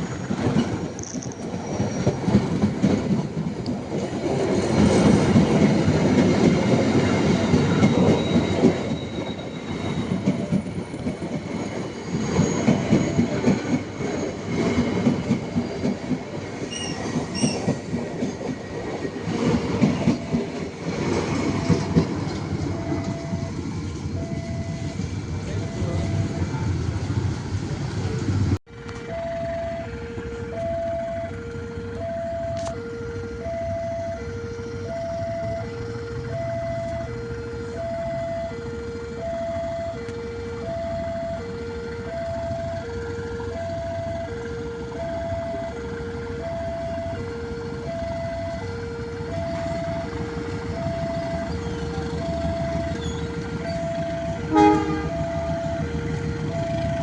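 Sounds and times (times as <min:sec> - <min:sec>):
level crossing two-tone alarm: 0:22.6 - 0:26.6, 0:29.0 - 0:57.0
low rumble of idling engines: 0:28.7 - 0:57.0.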